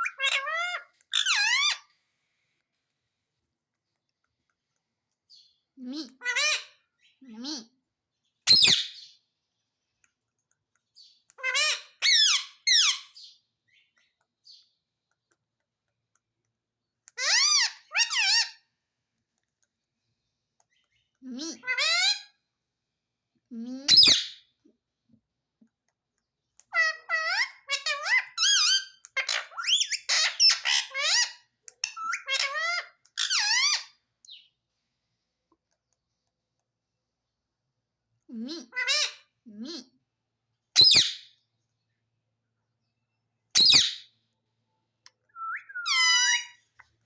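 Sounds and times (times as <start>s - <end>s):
parrot squawking: 0.0s - 1.9s, 6.2s - 6.8s, 11.4s - 13.2s, 17.2s - 18.6s, 21.5s - 22.3s, 26.7s - 34.0s, 38.6s - 39.4s, 45.3s - 46.7s.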